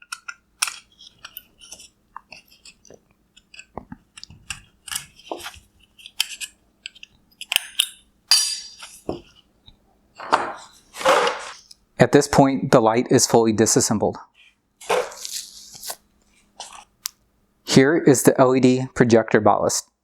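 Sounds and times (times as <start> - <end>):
plastic clicks and scrapes: 0.0 - 7.8.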